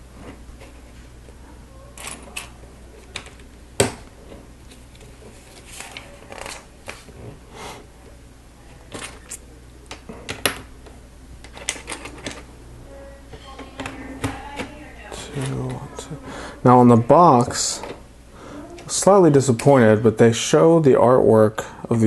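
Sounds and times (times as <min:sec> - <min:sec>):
soft rubbing of plastic pieces: 0:00.0 - 0:10.3.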